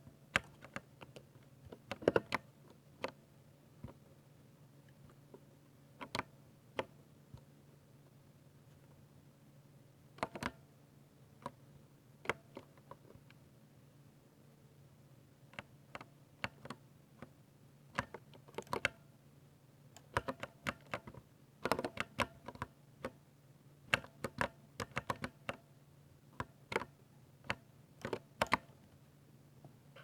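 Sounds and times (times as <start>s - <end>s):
mechanical keyboard typing: 1.8s - 2.4s, 18.0s - 19.0s, 20.0s - 22.7s, 23.9s - 25.6s, 27.5s - 28.7s.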